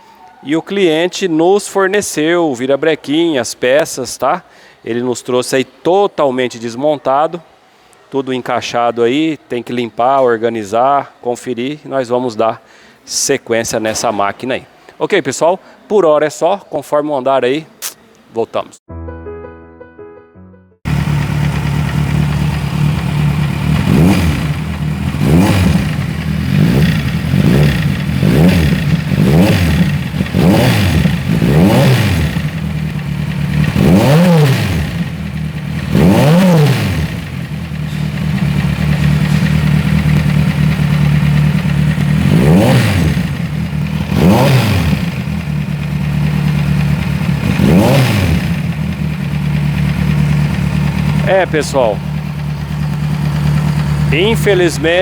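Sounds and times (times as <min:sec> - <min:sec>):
mechanical engine noise: 0:20.9 - 0:55.0
motorcycle engine revving: 0:20.9 - 0:55.0.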